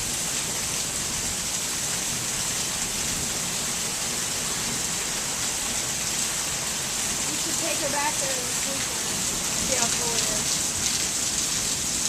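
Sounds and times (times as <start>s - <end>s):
heavy rain pouring: 0.0s - 12.0s.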